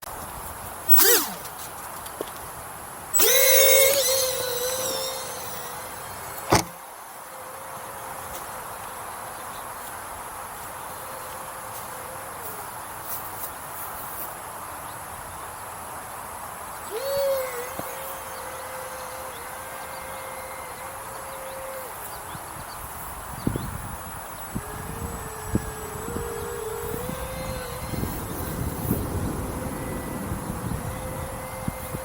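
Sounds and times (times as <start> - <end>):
electric ducted fan whining: 0.2 - 9.2, 16.8 - 32.0.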